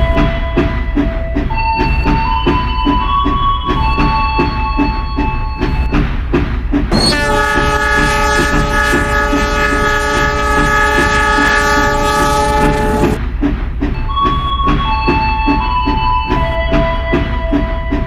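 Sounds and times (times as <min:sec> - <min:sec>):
train clatter: 0:00.0 - 0:18.0
train horn blast: 0:06.9 - 0:13.2.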